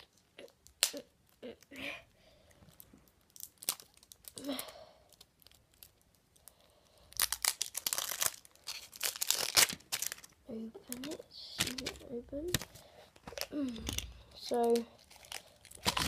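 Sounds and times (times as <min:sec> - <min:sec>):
candy packaging crinkling: 0:02.5 - 0:16.0
packaging tearing: 0:03.2 - 0:04.5, 0:07.1 - 0:16.0.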